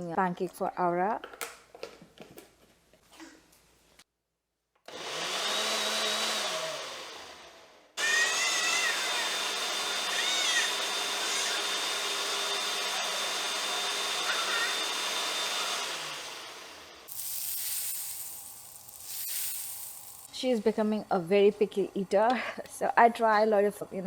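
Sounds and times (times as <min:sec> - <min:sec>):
blender motor running: 0:04.9 - 0:20.3
food sizzling in a hot pan: 0:17.1 - 0:20.3.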